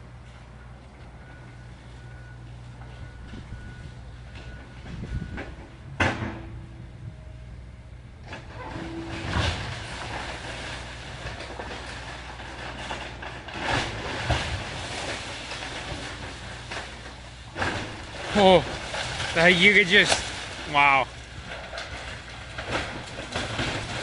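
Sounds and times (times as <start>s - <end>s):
machine engine droning: 0.0s - 24.0s
falling debris: 8.3s - 24.0s
timber cracking and crunching: 8.3s - 24.0s.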